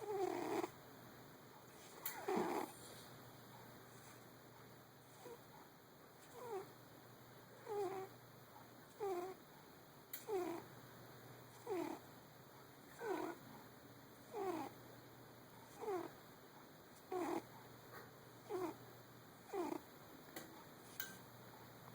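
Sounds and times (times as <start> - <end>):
cat snoring: 0.0 - 0.8, 2.0 - 2.8, 5.1 - 5.4, 6.3 - 6.7, 7.6 - 8.1, 9.0 - 9.4, 10.2 - 10.7, 11.6 - 12.0, 12.9 - 13.4, 14.3 - 14.8, 15.7 - 16.2, 17.1 - 17.5, 18.4 - 18.8, 19.5 - 19.9.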